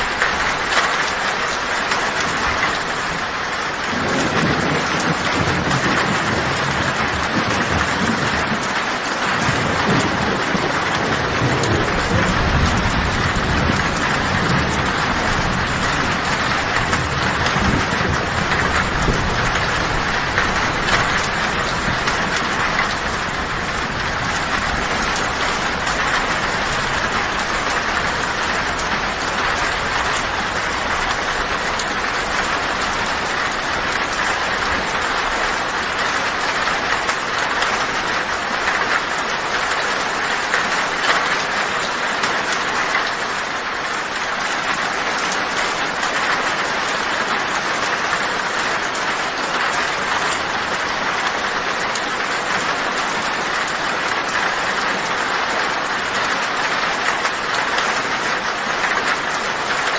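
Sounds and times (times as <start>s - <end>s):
heavy rain on a tin roof: 0.0s - 59.9s
low thunder rumble: 2.5s - 40.2s.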